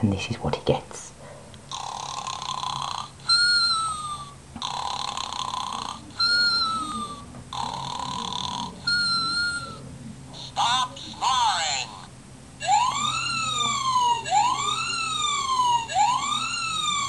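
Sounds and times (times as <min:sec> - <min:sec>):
cartoon snoring: 0:01.7 - 0:09.8
falling whistles: 0:08.9 - 0:09.8.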